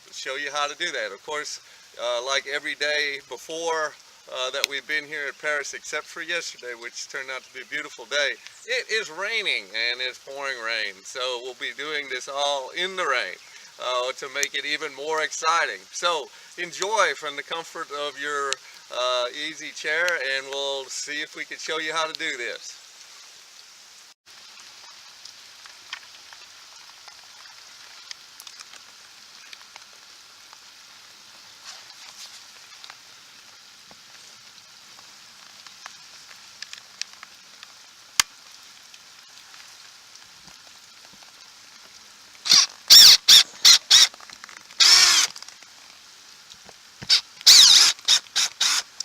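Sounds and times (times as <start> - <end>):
light rain patter: 0.0 - 49.0
cordless drill whirring: 42.5 - 44.1, 44.8 - 45.3, 47.5 - 48.8.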